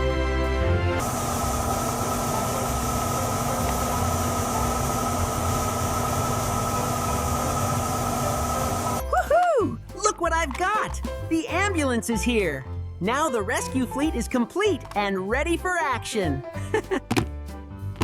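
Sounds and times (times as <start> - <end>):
mechanical hum with hiss: 1.0 - 9.0.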